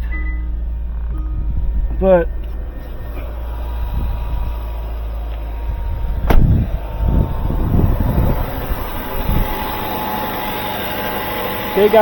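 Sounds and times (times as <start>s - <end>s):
low thumps: 0.0s - 10.0s
car engine running: 0.0s - 12.0s
sharp bang: 6.2s - 6.8s.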